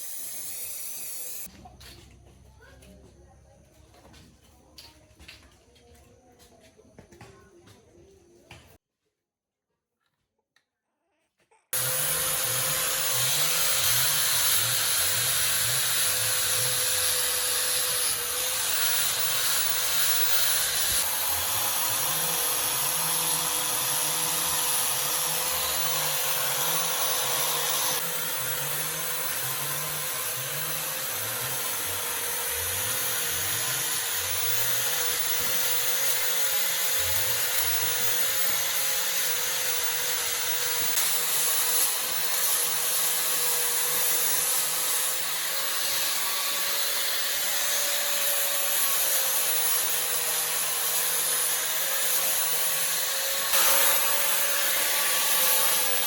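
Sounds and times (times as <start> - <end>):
power tool whining: 11.8 - 56.0.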